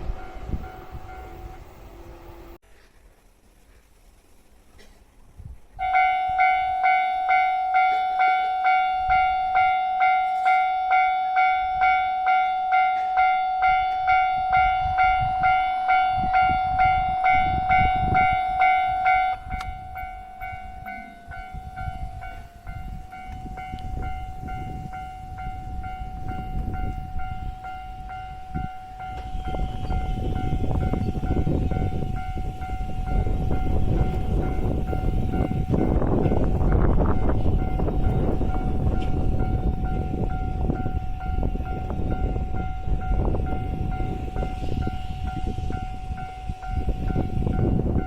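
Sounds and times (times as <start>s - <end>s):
train rumbling past: 0.0s - 48.0s
level crossing bell alarm: 5.8s - 48.0s.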